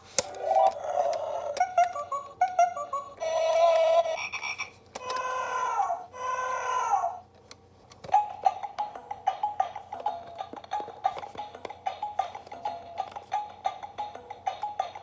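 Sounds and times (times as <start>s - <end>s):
toy short beeping notes: 1.6s - 4.7s.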